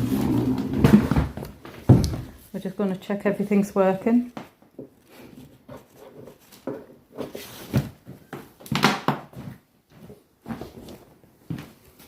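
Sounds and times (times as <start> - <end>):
knocks and bumps of handled objects: 0.6 - 2.4, 4.3 - 9.6.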